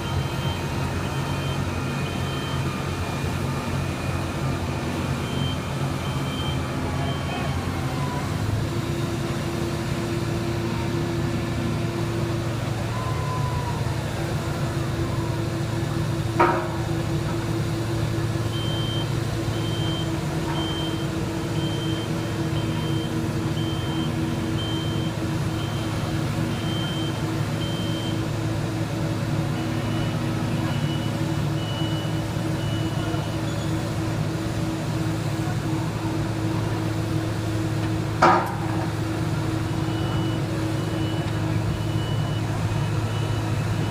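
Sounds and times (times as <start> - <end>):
reversing alarm beeping: 0.0 - 10.4, 17.6 - 34.1, 38.5 - 43.9
heavy machinery engine running: 0.0 - 43.9.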